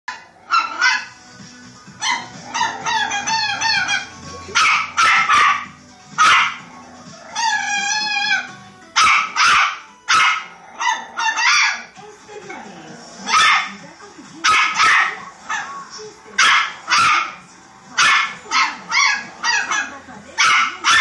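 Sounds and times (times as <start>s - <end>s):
dog whining: 2.0s - 4.2s, 6.9s - 8.6s, 10.2s - 11.9s
small dog yipping: 2.0s - 6.6s, 7.4s - 11.9s, 18.0s - 21.0s.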